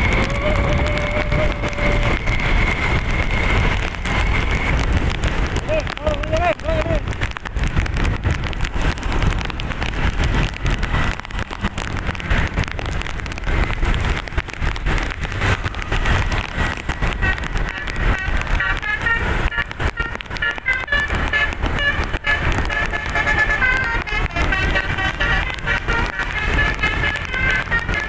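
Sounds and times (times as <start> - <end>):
low rumble of road traffic: 0.0 - 28.0
bus musical air horn melody: 17.1 - 28.0.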